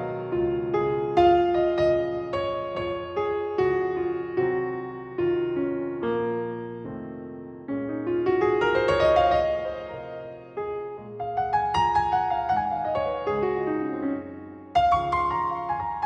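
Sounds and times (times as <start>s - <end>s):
gentle solo piano: 0.0s - 16.0s.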